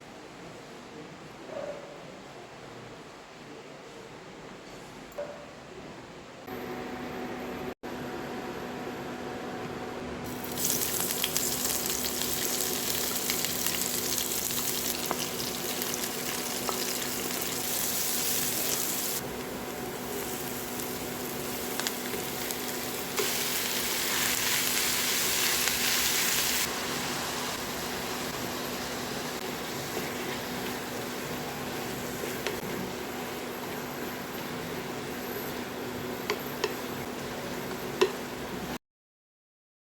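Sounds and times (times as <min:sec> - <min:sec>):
mushrooms sizzling in oil: 0:10.3 - 0:38.7.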